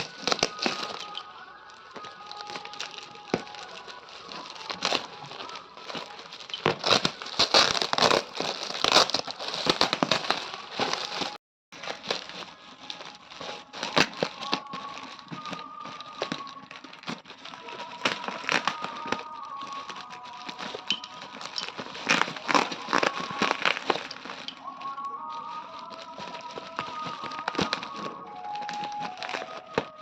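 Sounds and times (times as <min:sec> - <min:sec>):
plastic packaging crinkling: 0:00.0 - 0:30.0.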